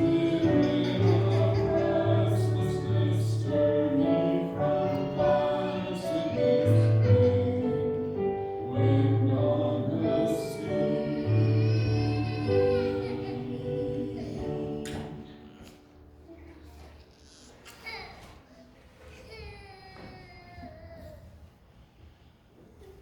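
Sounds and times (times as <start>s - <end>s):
voices singing: 0.0s - 16.0s.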